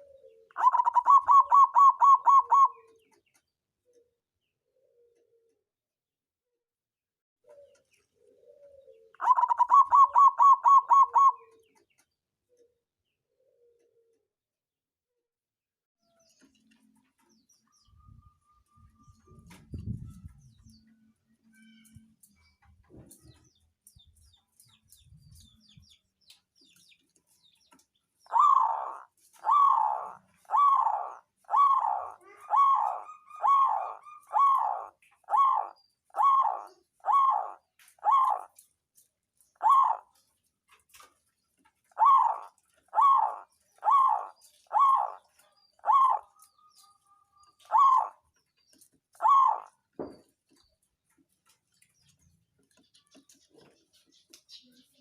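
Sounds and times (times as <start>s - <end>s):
dove cooing: 0.0s - 3.1s, 4.0s - 5.6s, 7.5s - 11.7s, 28.3s - 38.7s, 39.6s - 40.2s, 41.9s - 48.2s, 49.1s - 50.2s.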